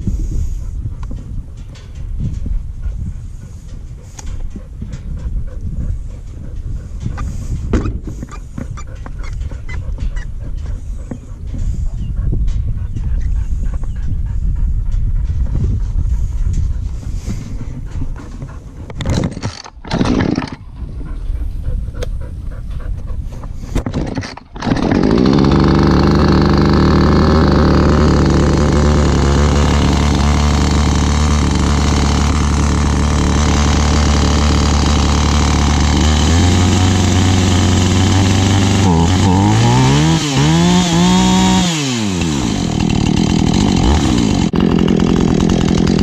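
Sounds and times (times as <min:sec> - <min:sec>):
chainsaw engine running: 0:19.0 - 0:20.6, 0:23.8 - 0:46.0.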